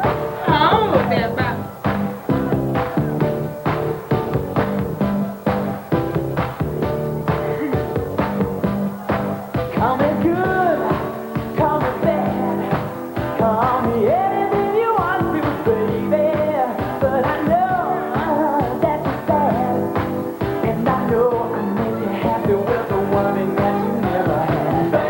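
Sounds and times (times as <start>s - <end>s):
soul song with lead vocal: 7.3s - 25.0s.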